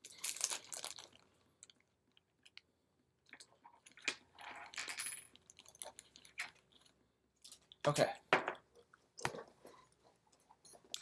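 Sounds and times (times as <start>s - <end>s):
handling small parts and tools: 0.0s - 1.2s.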